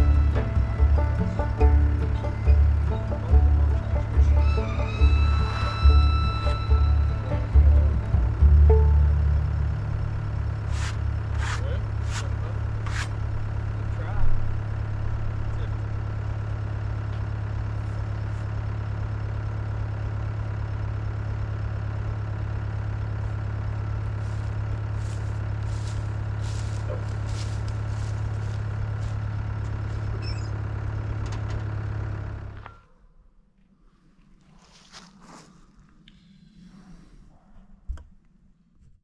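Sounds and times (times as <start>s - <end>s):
chainsaw engine running: 0.0s - 16.3s, 24.0s - 30.1s.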